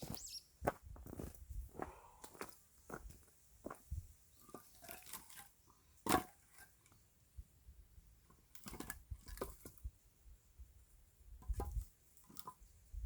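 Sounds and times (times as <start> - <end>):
axe splitting firewood: 4.9 - 6.7.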